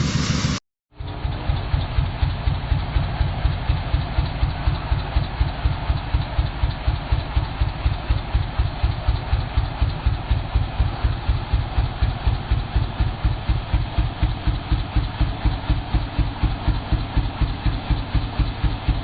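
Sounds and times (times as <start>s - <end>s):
engine idling with slow thump: 0.0s - 19.0s.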